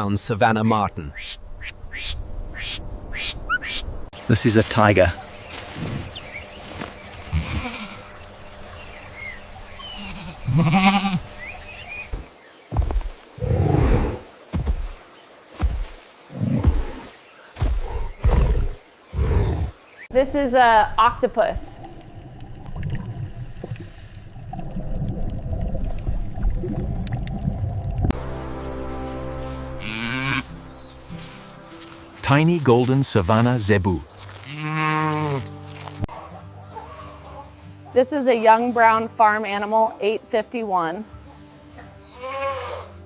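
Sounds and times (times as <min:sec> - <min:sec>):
goat bleating: 0:07.3 - 0:08.1, 0:09.8 - 0:11.2, 0:29.8 - 0:30.5, 0:34.4 - 0:35.5, 0:42.1 - 0:43.0
bubbling gurgling water: 0:21.5 - 0:28.2
underwater low rumble: 0:21.6 - 0:28.2
cow mooing: 0:34.4 - 0:35.5.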